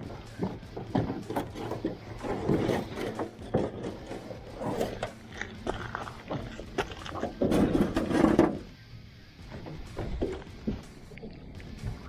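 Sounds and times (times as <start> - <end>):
objects knocking and rustling: 0.0 - 8.7
low hum: 0.0 - 12.0.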